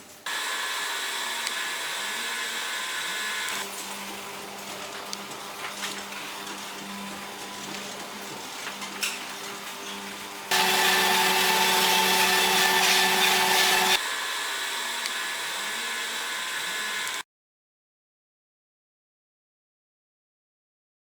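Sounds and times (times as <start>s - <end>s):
machinery motor humming: 10.5s - 14.0s.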